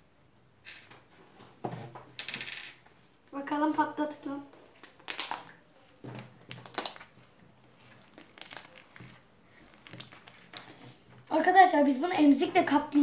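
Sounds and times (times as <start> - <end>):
slime squeezed with crackly clicks: 4.8 - 5.6, 6.4 - 7.1, 8.0 - 10.4.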